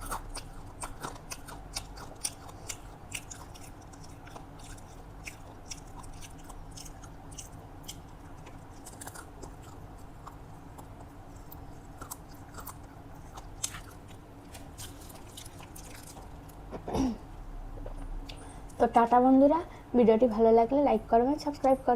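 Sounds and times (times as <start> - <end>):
person chewing with wet smacks: 0.0 - 16.9
steady low hum: 0.0 - 21.9.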